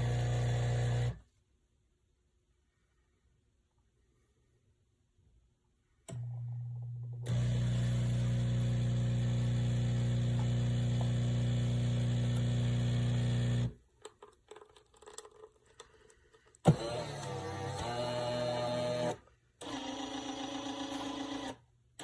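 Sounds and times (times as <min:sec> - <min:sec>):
espresso machine buzzing: 0:00.0 - 0:01.2, 0:06.2 - 0:13.8.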